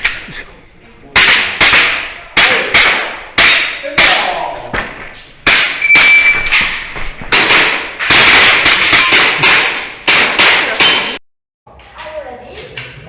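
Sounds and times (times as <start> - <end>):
metallic target hits: 5.5 - 11.2.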